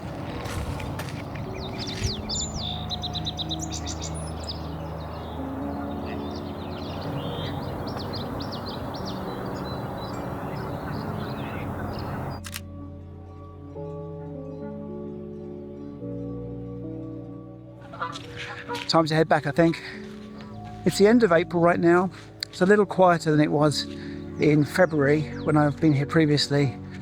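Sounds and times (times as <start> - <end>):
small birds chirping and trilling: 0.4 - 12.6, 17.8 - 27.0.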